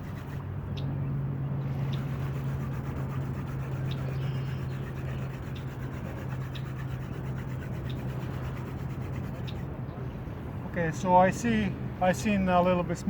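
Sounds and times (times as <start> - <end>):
wooden spindle grinding into wood: 0.0 - 0.4, 1.8 - 9.6
steady low hum: 0.0 - 13.0.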